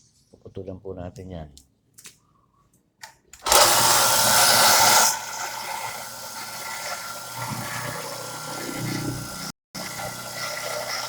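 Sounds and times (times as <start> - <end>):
power tool cutting metal: 3.4 - 11.0.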